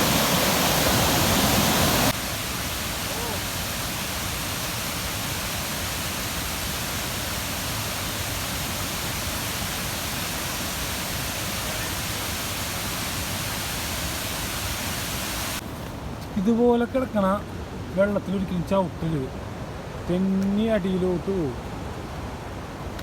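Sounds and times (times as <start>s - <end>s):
waterfall rushing: 0.0s - 15.6s.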